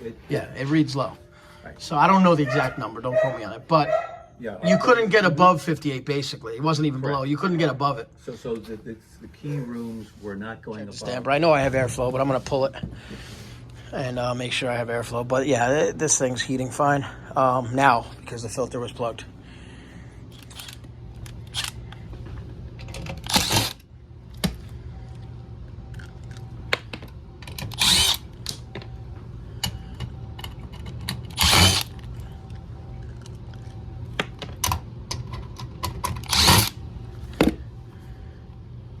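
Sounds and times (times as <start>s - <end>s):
air handler humming: 0.0s - 39.0s
power drill running: 23.2s - 23.8s, 27.7s - 28.3s, 31.4s - 32.0s, 36.2s - 36.8s.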